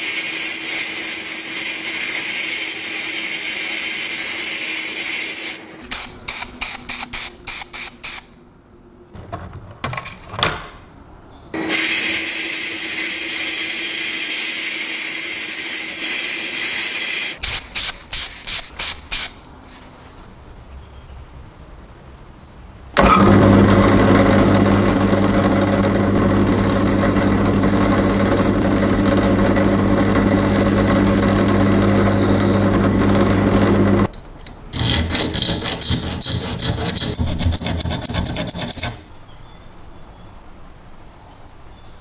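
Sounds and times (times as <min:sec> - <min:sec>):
grinding with high whine: 0:23.0 - 0:34.1, 0:34.7 - 0:39.1
power tool motor humming: 0:23.0 - 0:34.1.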